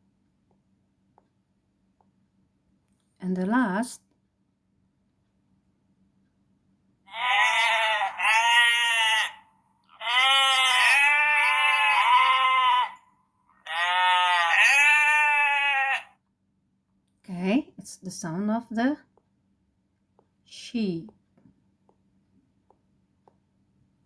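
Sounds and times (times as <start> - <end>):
sheep bleating: 7.1 - 16.2.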